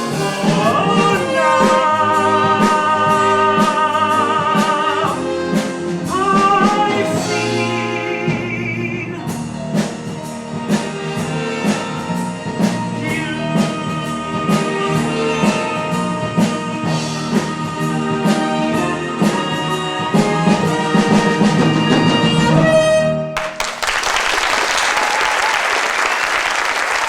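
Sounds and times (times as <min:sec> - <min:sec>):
steady drum beat: 0:00.0 - 0:22.5.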